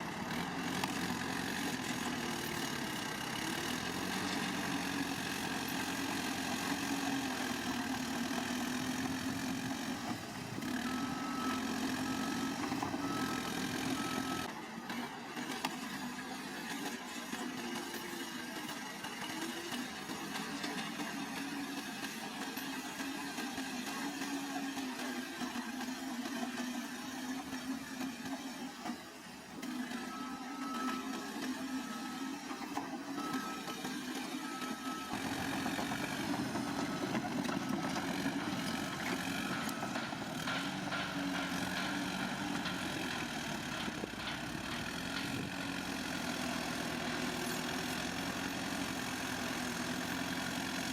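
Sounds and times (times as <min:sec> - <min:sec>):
diesel engine running: 0:00.0 - 0:14.8, 0:30.1 - 0:50.9.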